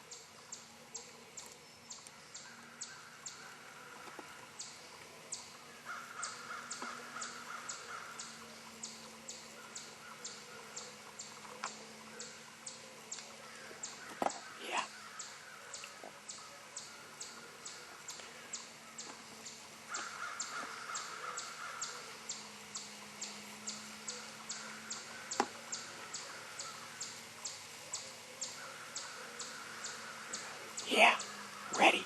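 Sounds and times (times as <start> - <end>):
harsh cawing calls: 5.7 - 8.8, 13.4 - 16.8, 19.7 - 22.5, 23.8 - 27.2, 28.5 - 32.0.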